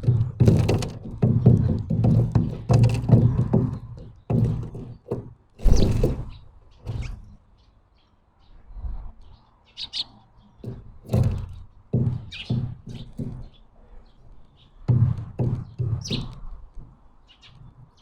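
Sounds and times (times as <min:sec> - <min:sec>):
loud thuds and scuffling: 0:00.0 - 0:07.4, 0:10.6 - 0:13.6
small birds chirping: 0:00.0 - 0:18.0.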